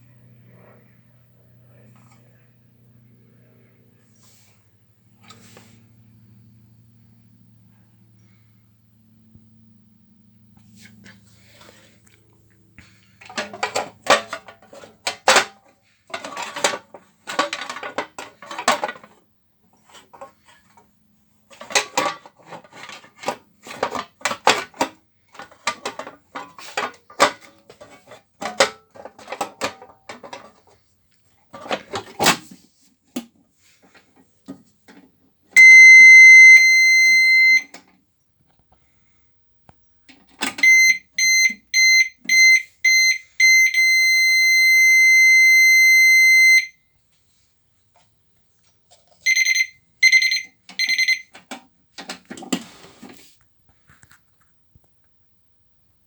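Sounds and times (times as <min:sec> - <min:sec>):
high-pitched electronic alarm tone: 0:35.6 - 0:37.7, 0:40.6 - 0:46.7.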